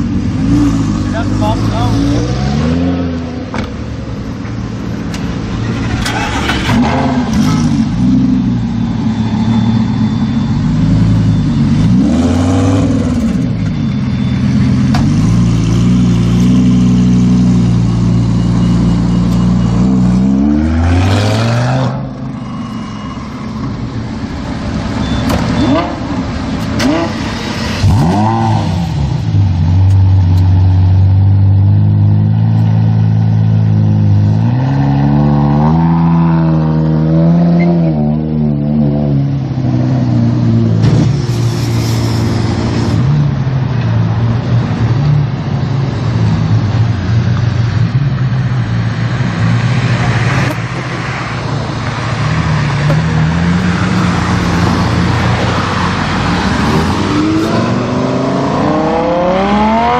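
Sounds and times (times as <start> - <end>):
car engine revving: 4.9 - 10.0, 24.6 - 43.1, 48.3 - 59.9.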